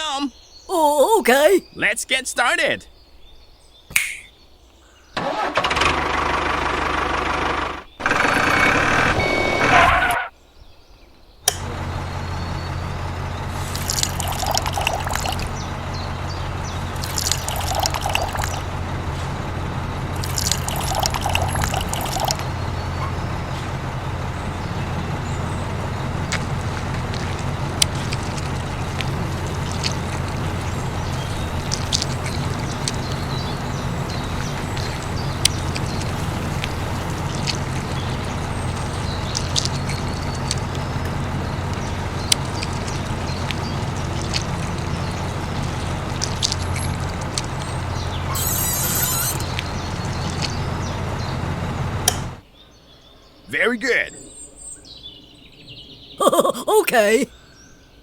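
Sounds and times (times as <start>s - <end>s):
liquid pouring: 17.0s - 18.5s, 26.1s - 50.6s.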